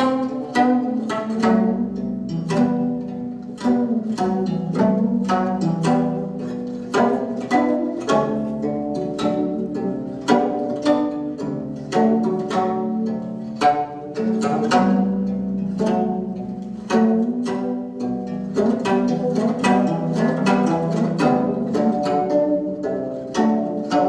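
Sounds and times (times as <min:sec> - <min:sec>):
plucked string melody: 0:00.0 - 0:24.0.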